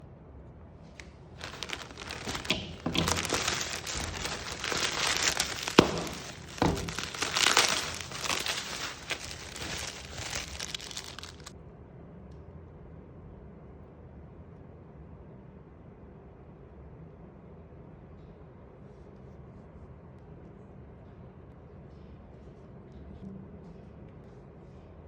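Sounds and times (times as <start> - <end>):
wrapping rustling: 1.4 - 11.5.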